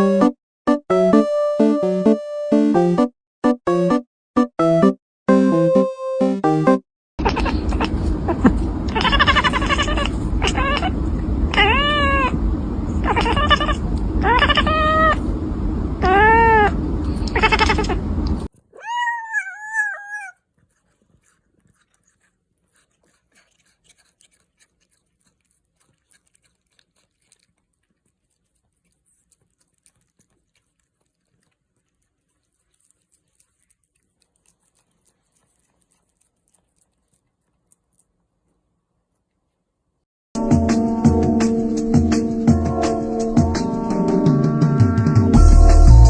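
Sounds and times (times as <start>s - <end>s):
cat meowing loudly: 8.9s - 12.4s, 13.0s - 15.2s, 18.7s - 20.4s.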